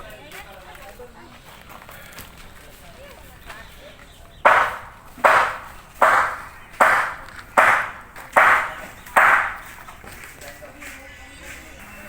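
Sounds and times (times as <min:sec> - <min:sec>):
ringing hand tool blows: 0:04.4 - 0:10.0.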